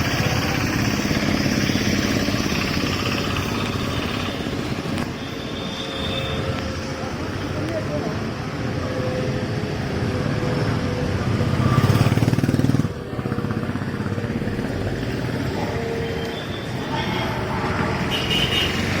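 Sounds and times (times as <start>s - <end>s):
vehicle and motorbike engines: 0.0s - 19.0s
voices: 6.4s - 9.9s.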